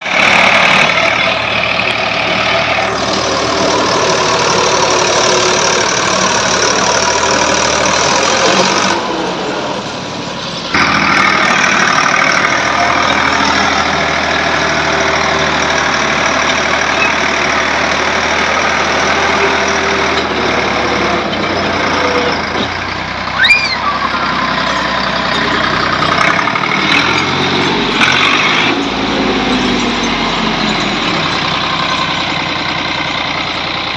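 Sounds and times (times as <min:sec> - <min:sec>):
tractor engine running: 0:00.0 - 0:33.9
brief high squeak: 0:23.4 - 0:25.0.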